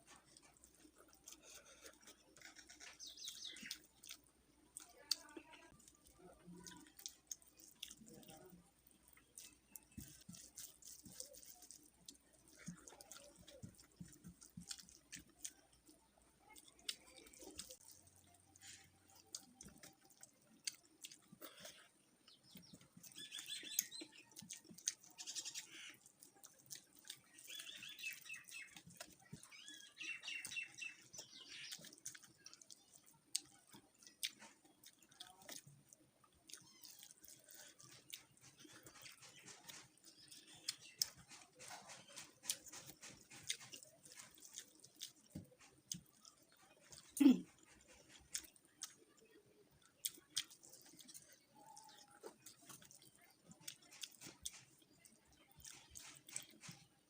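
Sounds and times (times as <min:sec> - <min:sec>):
chewing and eating sounds: 0:00.0 - 0:57.0
bird chirping: 0:02.4 - 0:04.0, 0:22.2 - 0:24.5, 0:27.2 - 0:32.0.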